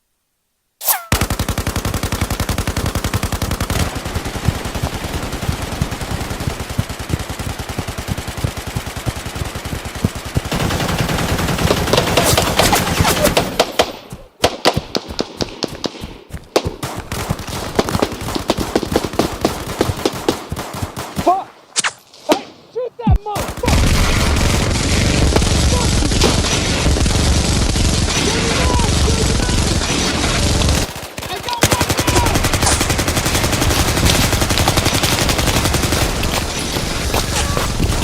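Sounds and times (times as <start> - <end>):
single gunshots: 0.8 - 1.5
machine-gun fire: 0.8 - 15.6, 16.6 - 21.3, 23.4 - 38.0.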